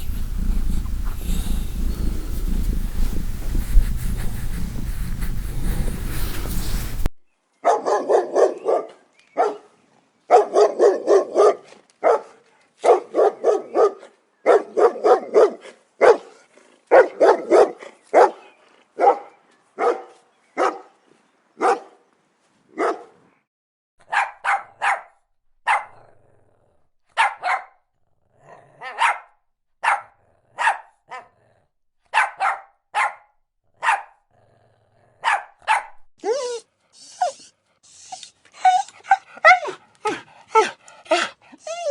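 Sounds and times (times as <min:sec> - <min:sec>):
dog barking: 0:07.6 - 0:09.7, 0:10.3 - 0:21.0, 0:21.6 - 0:22.0, 0:22.7 - 0:23.2, 0:24.0 - 0:26.1, 0:27.1 - 0:27.8, 0:28.8 - 0:31.4, 0:32.1 - 0:34.2, 0:35.2 - 0:36.0, 0:38.6 - 0:41.9.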